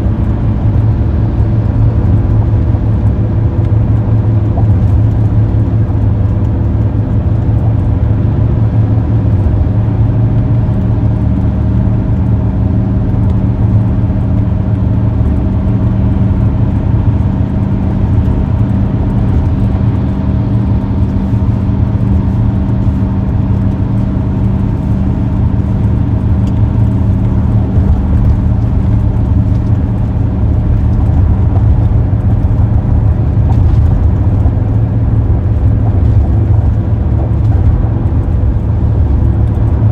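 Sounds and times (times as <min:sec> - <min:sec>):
car road and engine noise: 0:00.0 - 0:39.9.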